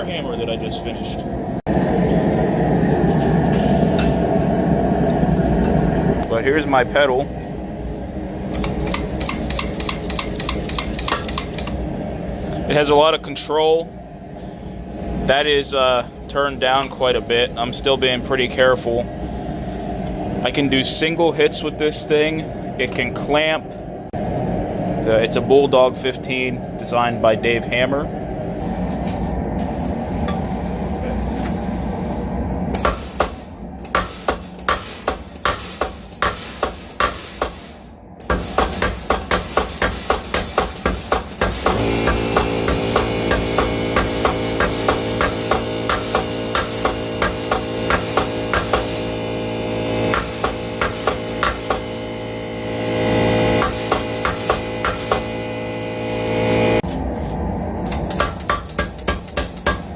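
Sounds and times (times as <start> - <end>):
steady machine hum: 0.0 - 59.9
power hammer blows: 32.7 - 56.8, 57.8 - 59.9.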